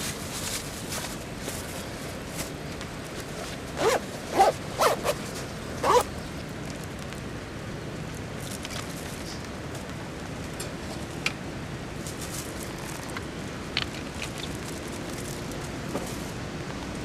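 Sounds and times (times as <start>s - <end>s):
zipper pulled: 3.8s - 6.1s.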